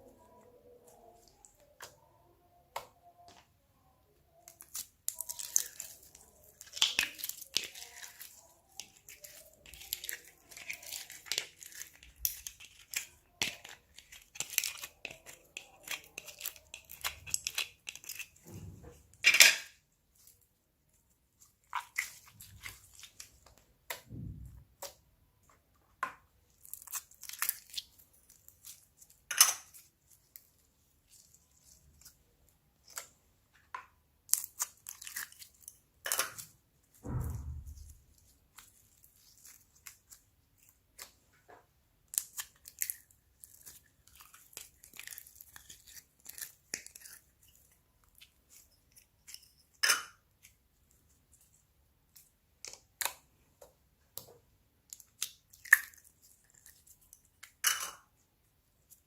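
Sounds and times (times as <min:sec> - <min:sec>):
slime clicks and crackles: 0:04.4 - 0:18.5, 0:26.5 - 0:30.5, 0:54.2 - 0:57.6.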